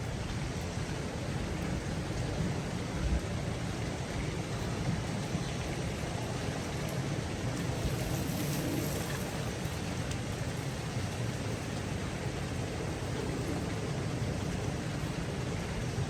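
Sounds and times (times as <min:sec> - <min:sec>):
wind gusts buffeting microphone: 0:00.0 - 0:16.0
strong wind blowing: 0:00.1 - 0:16.0.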